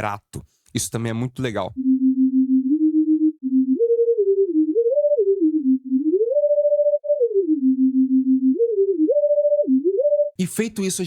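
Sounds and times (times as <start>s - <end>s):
synthesizer melody with gliding notes: 1.8s - 10.4s.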